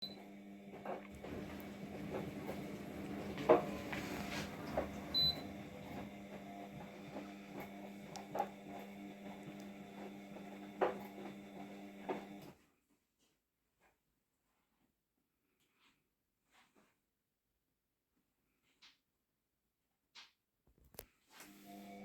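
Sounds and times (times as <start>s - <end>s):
dishwasher motor hum: 0.0s - 12.5s, 21.4s - 22.0s.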